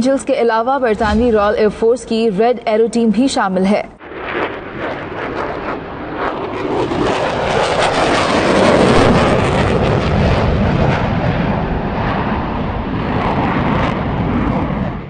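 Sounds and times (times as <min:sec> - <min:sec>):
jets flying over: 0:04.0 - 0:15.0.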